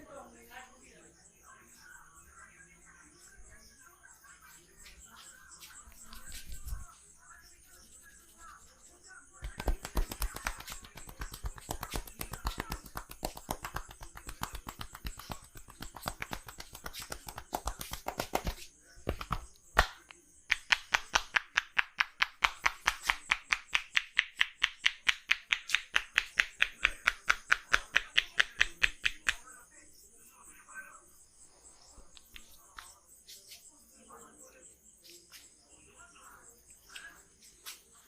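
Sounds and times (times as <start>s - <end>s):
hands slapping on body: 9.4s - 29.4s.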